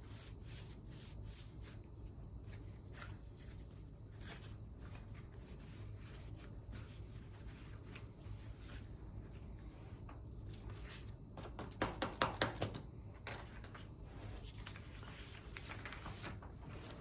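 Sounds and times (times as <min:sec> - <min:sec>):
low steady hum: 0:00.0 - 0:11.6.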